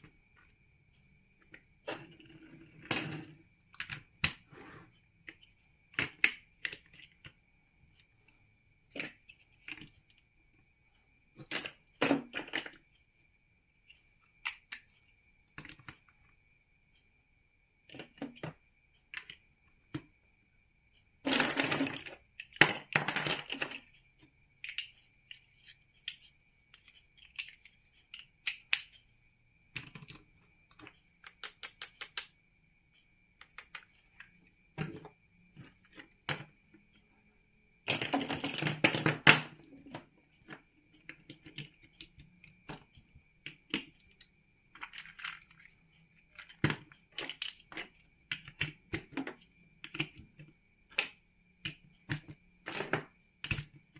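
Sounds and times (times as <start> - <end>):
plastic bricks clicking: 24.6 - 29.1, 30.8 - 32.3.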